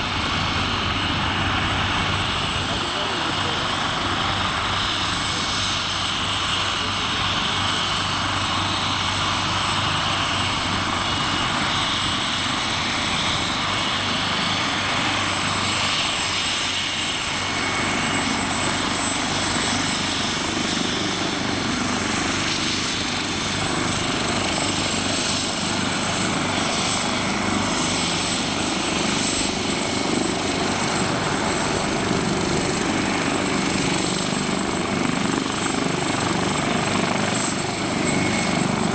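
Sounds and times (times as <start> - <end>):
high turbine whine: 0.0 - 6.6, 17.2 - 38.9
helicopter rotor and engine: 0.0 - 38.9.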